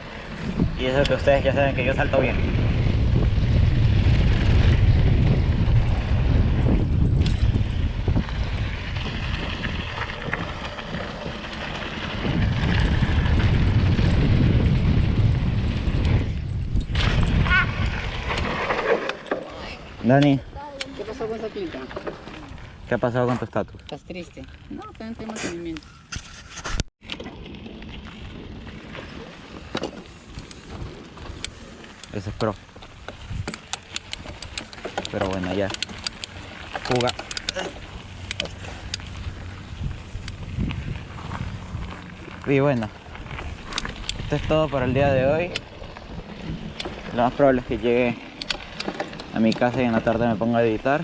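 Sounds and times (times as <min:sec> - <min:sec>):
bike rattling over trail: 0:00.0 - 0:51.0
wind rumbling on microphone: 0:00.0 - 0:51.0
sharp clicks and knocks: 0:31.4 - 0:37.6.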